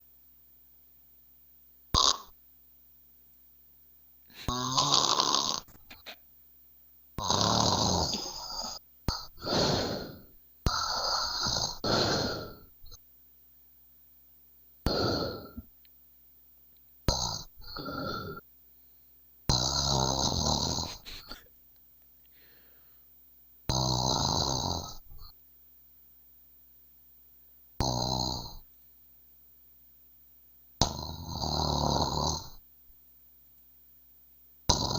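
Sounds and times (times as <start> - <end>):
person snoring loudly: 2.0 - 2.3, 4.3 - 6.0, 7.2 - 13.0, 14.9 - 15.7, 17.1 - 18.4, 19.5 - 21.4, 23.7 - 25.3, 27.8 - 28.6, 30.8 - 32.6, 34.7 - 34.9.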